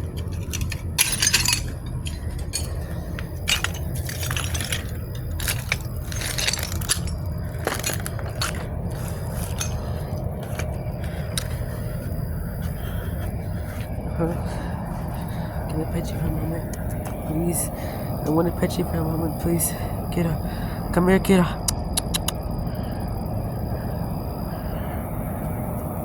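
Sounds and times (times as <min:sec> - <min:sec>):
light clinks and knocks: 0:00.0 - 0:12.8
steady low rumble: 0:00.0 - 0:26.0.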